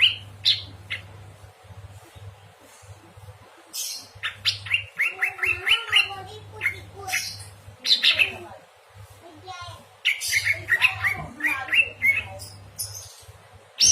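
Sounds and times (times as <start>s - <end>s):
songbird chirping: 3.6s - 8.6s, 9.9s - 13.9s.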